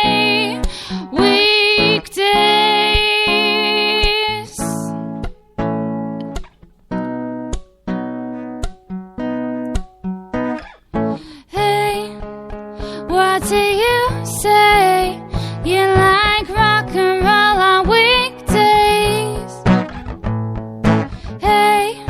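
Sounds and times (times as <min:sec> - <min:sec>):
girl singing: 0:00.0 - 0:05.6, 0:11.2 - 0:19.8, 0:21.2 - 0:22.0
acoustic guitar chords: 0:00.0 - 0:22.0.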